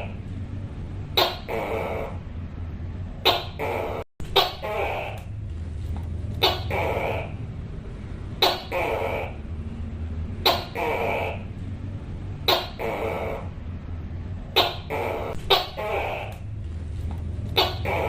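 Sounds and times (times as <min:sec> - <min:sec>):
gecko calling: 0:01.1 - 0:02.2, 0:03.2 - 0:05.4, 0:06.4 - 0:07.5, 0:08.4 - 0:09.6, 0:10.4 - 0:11.6, 0:12.4 - 0:13.7, 0:14.5 - 0:16.6, 0:17.4 - 0:18.0.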